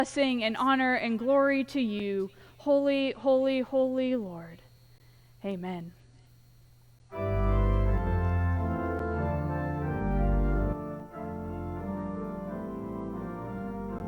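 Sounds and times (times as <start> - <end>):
organ playing chords: 7.1 - 14.0.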